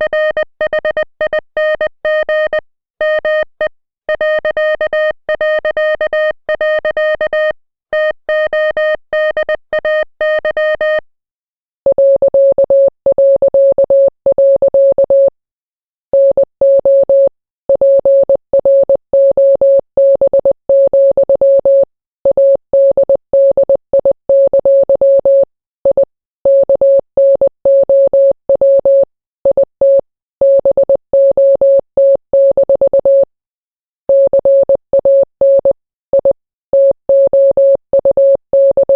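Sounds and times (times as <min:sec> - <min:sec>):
morse code beeps: 0:00.0 - 0:11.0, 0:34.1 - 0:38.9.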